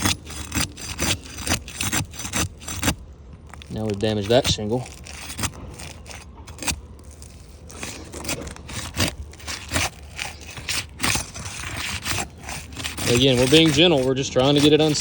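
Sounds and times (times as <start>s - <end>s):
bar scraping under roof shingle: 0.0s - 15.0s
shingle cracking: 0.0s - 15.0s.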